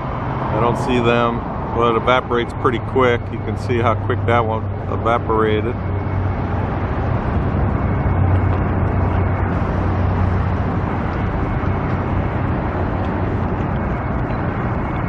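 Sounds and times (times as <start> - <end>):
low outdoor hum: 0.0 - 15.0.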